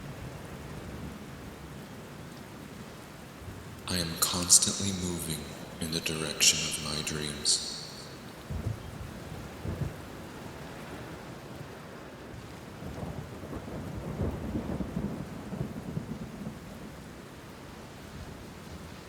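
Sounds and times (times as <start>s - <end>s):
steady rain: 0.0s - 19.0s
low roll of thunder: 12.8s - 16.9s.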